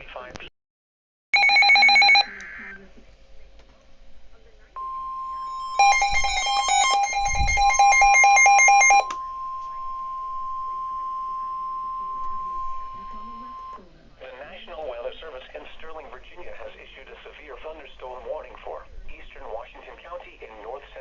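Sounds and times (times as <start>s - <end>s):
rapid electronic beeping: 4.8s - 13.8s
steady warning tone: 4.8s - 13.9s.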